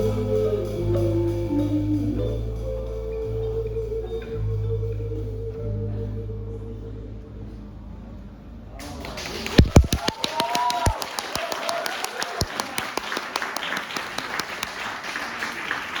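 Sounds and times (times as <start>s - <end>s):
audience applause: 8.8s - 16.0s
audience cheering: 8.8s - 16.0s.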